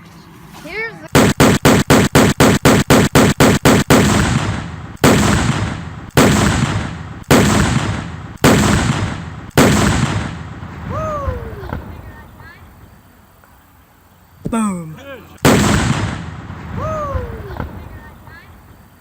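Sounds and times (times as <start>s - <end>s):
black powder blast booms: 1.1s - 12.4s, 15.4s - 18.8s.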